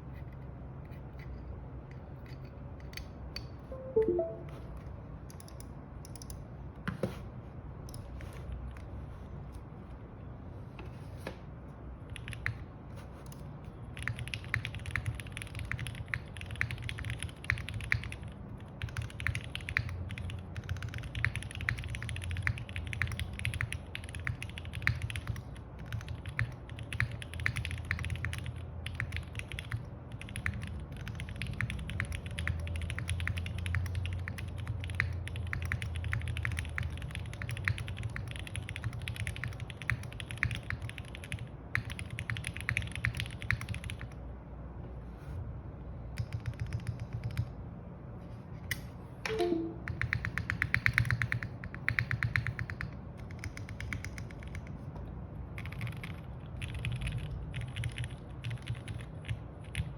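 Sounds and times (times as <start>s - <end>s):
mechanical keyboard typing: 12.0s - 12.6s, 13.3s - 44.2s, 46.1s - 47.5s, 49.3s - 54.7s, 55.6s - 59.9s.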